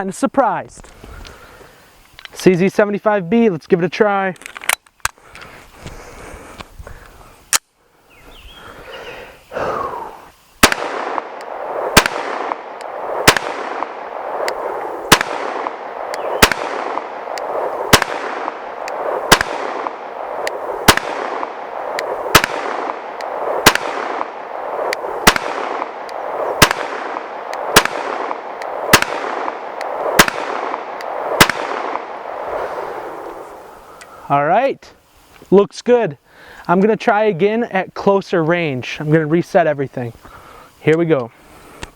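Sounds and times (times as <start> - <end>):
pistol single shots: 10.6 - 32.4.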